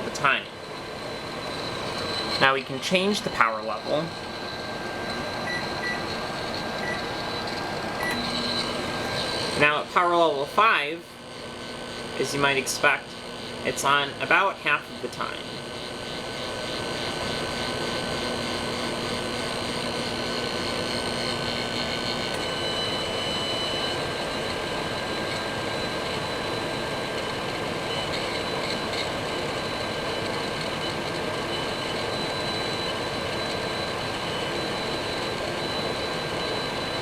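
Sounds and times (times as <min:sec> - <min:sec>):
microwave fan and turntable hum: 0:00.0 - 0:37.0.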